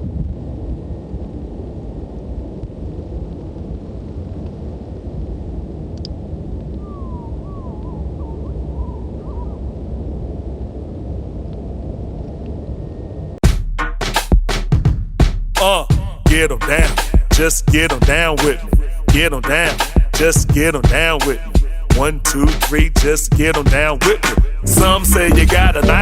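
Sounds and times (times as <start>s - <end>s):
low rumbling noise: 0.0s - 13.4s, 15.9s - 26.0s
short wavering call: 6.8s - 9.6s.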